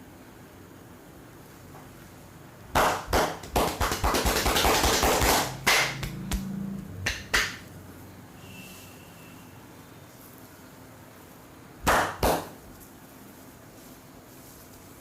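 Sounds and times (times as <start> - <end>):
hands slapping body: 2.7 - 7.6, 11.8 - 12.6
fast tapping: 2.8 - 6.4.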